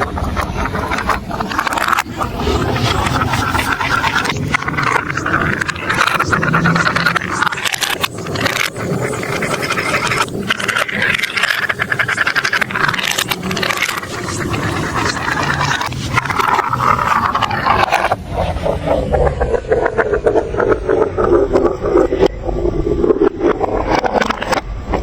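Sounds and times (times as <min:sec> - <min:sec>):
marbles rattling on plastic tracks: 0:00.0 - 0:18.2.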